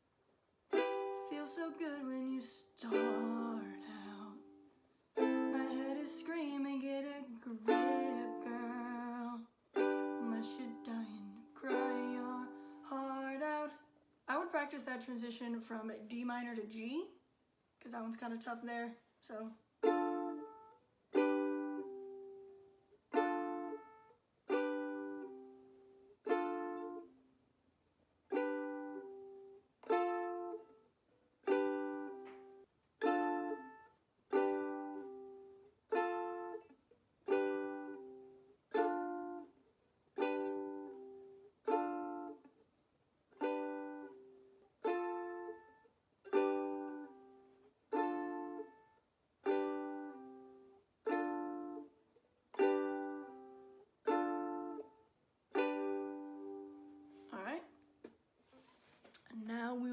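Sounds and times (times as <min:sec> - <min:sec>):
ukulele chords strummed: 0:00.7 - 0:13.7, 0:19.8 - 0:27.2, 0:28.3 - 0:30.8, 0:31.4 - 0:39.6, 0:40.2 - 0:42.6, 0:43.4 - 0:57.3.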